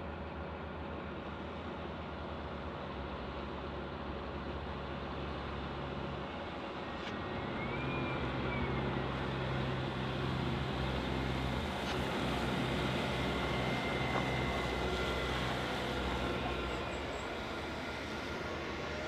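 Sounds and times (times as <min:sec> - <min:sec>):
heavy vehicle engine humming: 0:00.1 - 0:19.0.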